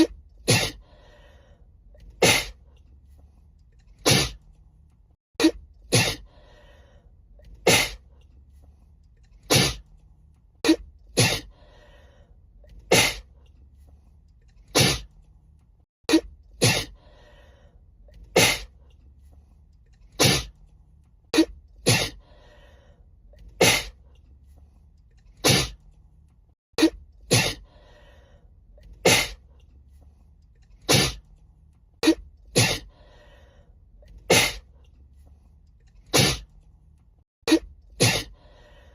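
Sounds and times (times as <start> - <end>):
woman sneezing: 0.5 - 0.8, 5.4 - 6.2, 7.7 - 8.0, 10.7 - 11.5, 16.6 - 17.0, 26.8 - 27.6, 32.0 - 32.9, 34.3 - 34.6, 36.2 - 36.4, 37.5 - 38.4.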